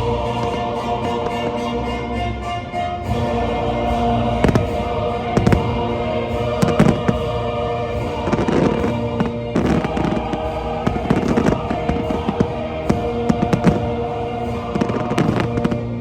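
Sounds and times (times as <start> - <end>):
orchestral music: 0.0 - 16.0
fireworks bursting and crackling: 4.4 - 16.0.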